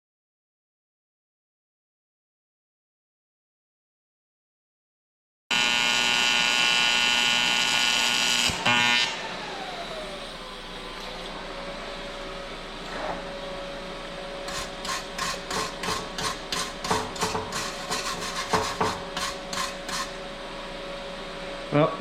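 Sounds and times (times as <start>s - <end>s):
hand tool scraping metal: 14.5s - 20.2s.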